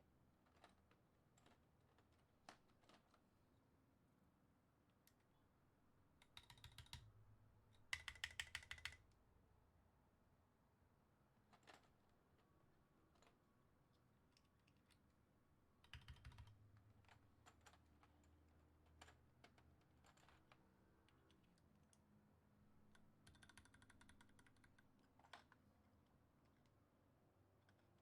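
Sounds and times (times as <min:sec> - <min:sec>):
mechanical keyboard typing: 0:06.2 - 0:07.1, 0:07.9 - 0:09.0, 0:15.8 - 0:16.6, 0:23.2 - 0:24.8.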